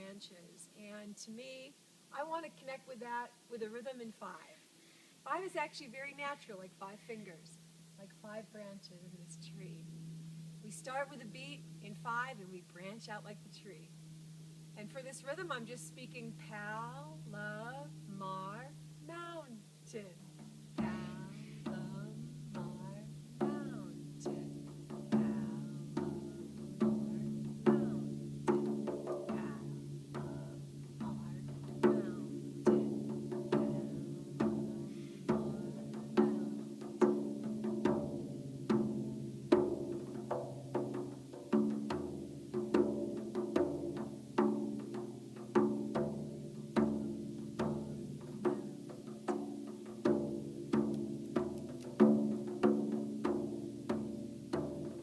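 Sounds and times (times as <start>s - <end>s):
frame drum rhythm: 9.1s - 55.0s.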